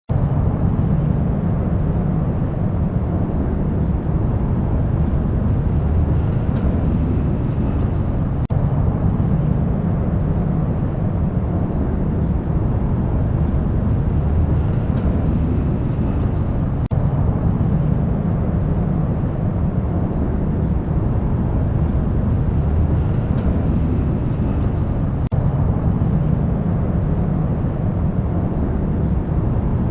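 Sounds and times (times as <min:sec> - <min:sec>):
aeroplane engine rumble: 0:00.1 - 0:29.9.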